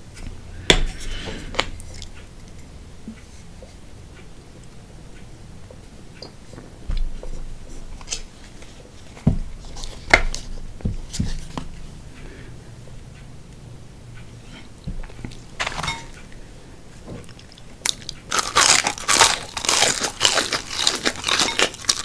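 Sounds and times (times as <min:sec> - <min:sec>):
crunching bites into fried chicken: 0:17.9 - 0:22.0.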